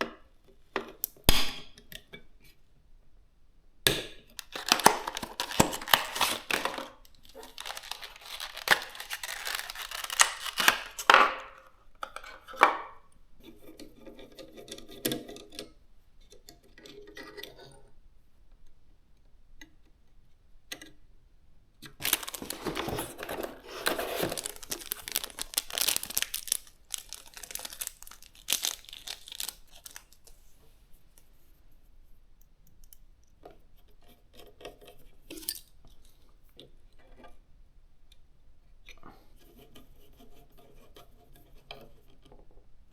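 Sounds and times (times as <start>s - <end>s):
packaging rustling and tearing: 4.4s - 11.1s, 22.0s - 30.6s.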